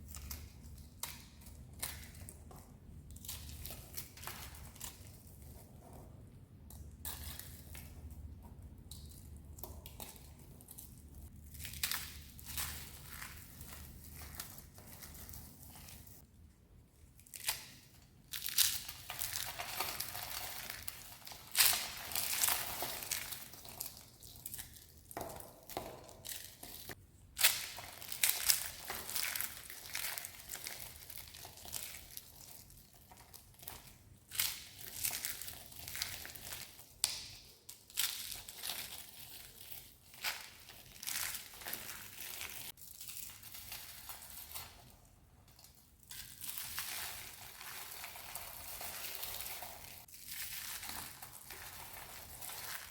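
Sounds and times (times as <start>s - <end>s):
dry soap crunching: 0.0s - 16.2s, 17.2s - 52.9s.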